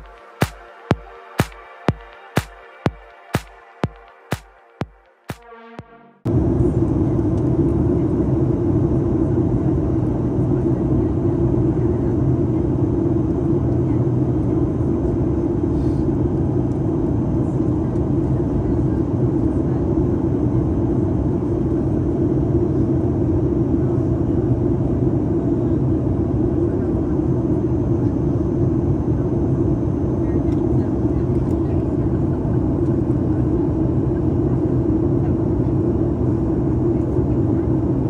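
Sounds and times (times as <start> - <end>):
electronic music: 0.0 - 6.3
airliner cabin engine rumble: 6.3 - 38.0.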